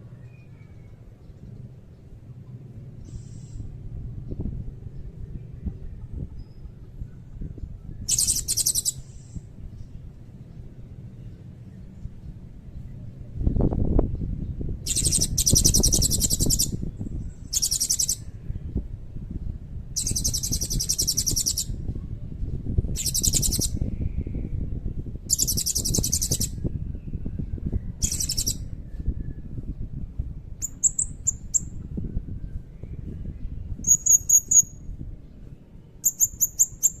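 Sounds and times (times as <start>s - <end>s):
low rumble: 0.8s - 8.1s
parrot high-pitched trilling: 8.1s - 9.0s
parrot sharp high chirps: 8.1s - 9.1s, 14.9s - 16.8s, 17.5s - 18.2s, 20.0s - 21.7s, 23.0s - 23.8s, 25.3s - 26.5s, 28.0s - 28.6s, 36.0s - 37.0s.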